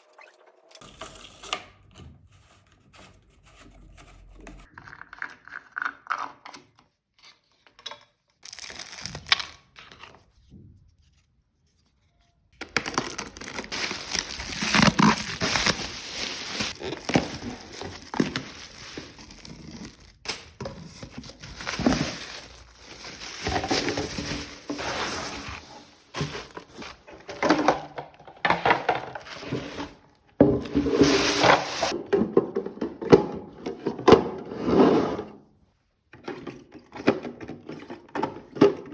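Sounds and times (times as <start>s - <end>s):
packing materials crinkling and tearing: 8.4s - 9.8s, 12.6s - 27.6s.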